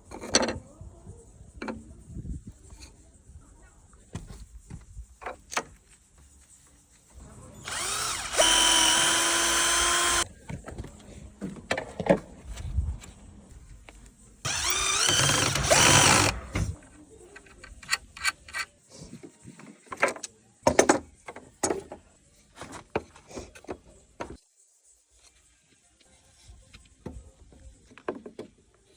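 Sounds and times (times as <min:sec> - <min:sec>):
electric drill spinning up: 0:07.6 - 0:10.2, 0:14.5 - 0:16.8.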